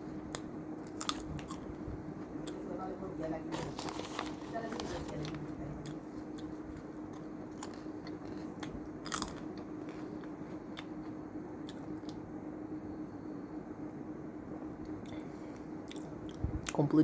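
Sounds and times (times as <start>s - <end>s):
chewing crunchy snack: 0.3s - 1.7s, 5.2s - 12.2s, 15.8s - 16.8s.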